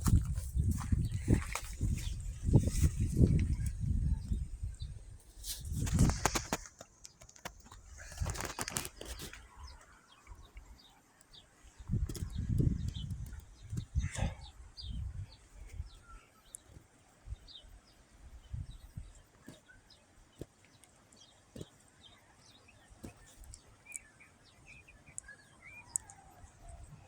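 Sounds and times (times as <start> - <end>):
birds chirping: 5.8 - 27.0.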